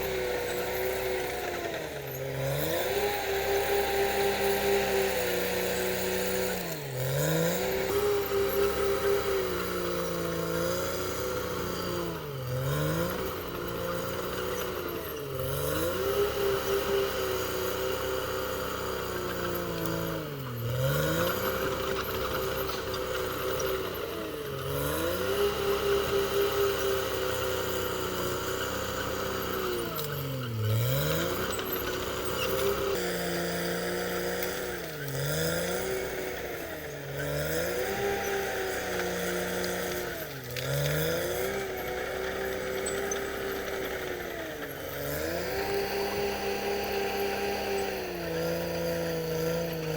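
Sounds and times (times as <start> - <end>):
bulldozer diesel engine under load: 0.0 - 49.9.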